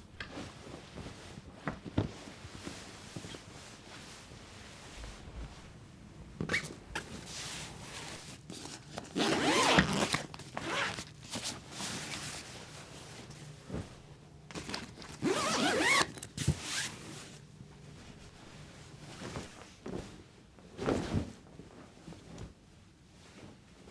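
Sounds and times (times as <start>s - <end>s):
zipper being pulled: 9.0s - 11.0s, 15.2s - 16.9s.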